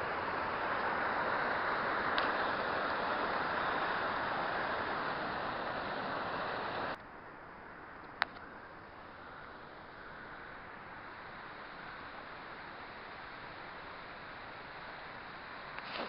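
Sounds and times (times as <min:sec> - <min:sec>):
waterfall rushing: 0:00.0 - 0:07.0
small click: 0:08.0 - 0:08.4.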